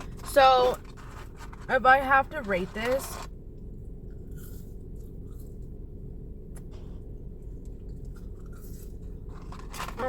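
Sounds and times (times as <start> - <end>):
low hum: 0.0 - 10.0
chewing food: 7.5 - 10.0.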